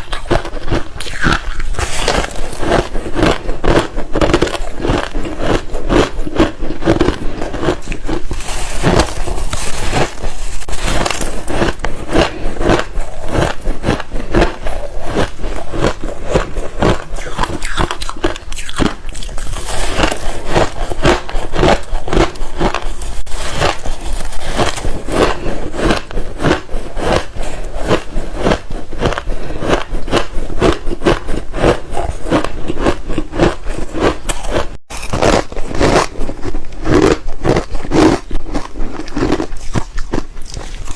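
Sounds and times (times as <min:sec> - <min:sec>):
ice being crunched: 0:00.7 - 0:03.4, 0:07.3 - 0:12.8, 0:16.9 - 0:25.5.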